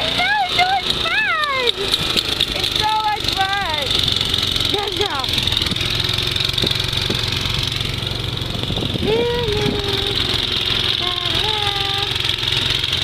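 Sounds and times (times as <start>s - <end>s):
small engine droning: 0.0s - 13.0s
child calling: 9.0s - 10.4s, 11.0s - 12.2s.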